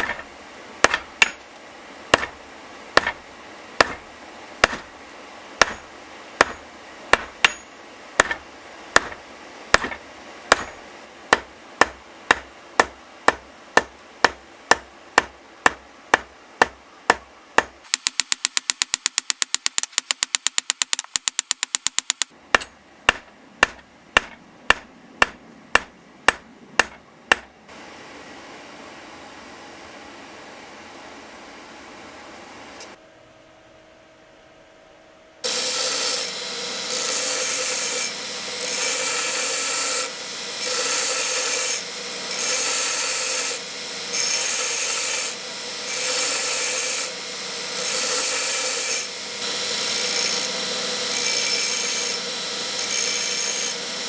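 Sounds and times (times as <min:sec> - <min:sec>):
fast light hammer strikes: 0:00.0 - 0:27.7
hammer blows on hot steel: 0:00.0 - 0:27.7.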